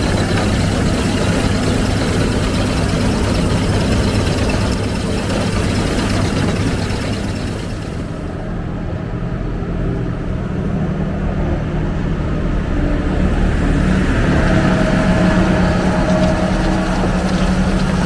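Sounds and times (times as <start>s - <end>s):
farm machine engine running: 0.0s - 8.6s, 12.3s - 18.0s.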